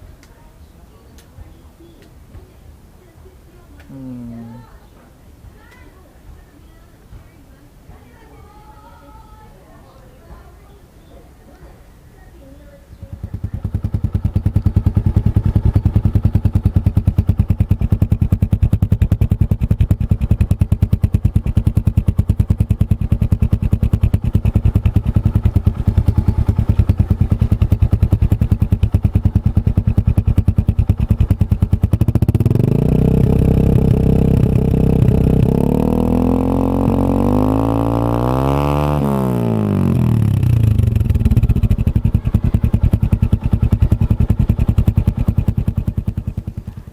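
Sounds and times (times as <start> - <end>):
motorcycle engine idling and revving: 12.5 - 46.9.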